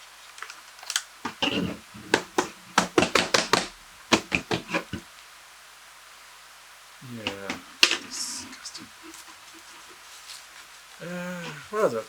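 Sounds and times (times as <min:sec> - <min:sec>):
taps and knocks of hard objects: 0:00.9 - 0:05.0, 0:07.2 - 0:08.4.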